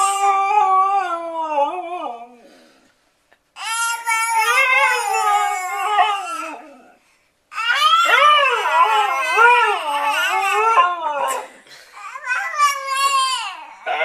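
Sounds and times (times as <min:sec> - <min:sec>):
dog howling: 0:04.2 - 0:07.0, 0:07.7 - 0:11.5.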